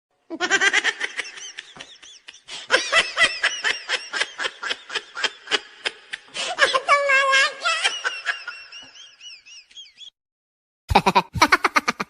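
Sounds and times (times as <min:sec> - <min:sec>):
person laughing in high bursts: 0:10.9 - 0:12.0.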